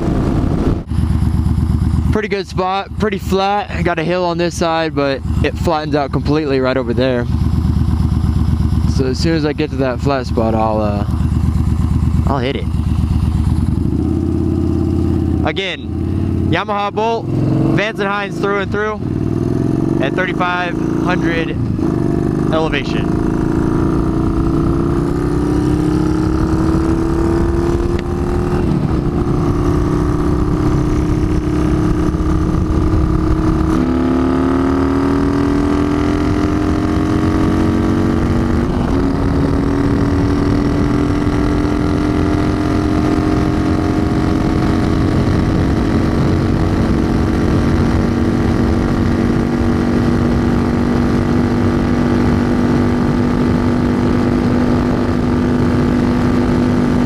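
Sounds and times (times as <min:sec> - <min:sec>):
wind rush: 0:00.0 - 0:01.2, 0:21.5 - 0:57.0
motorcycle engine accelerating: 0:00.0 - 0:57.0.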